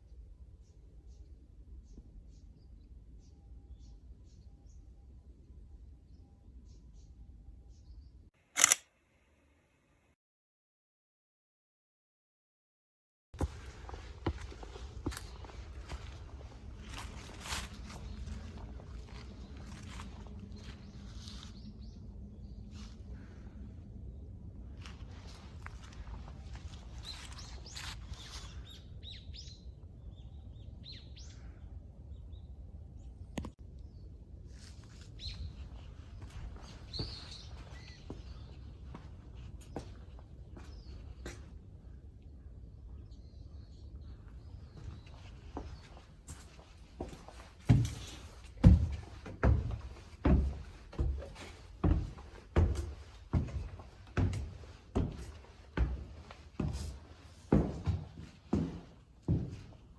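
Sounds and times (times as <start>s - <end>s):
heavy footsteps walking: 13.4s - 21.4s, 44.8s - 59.9s.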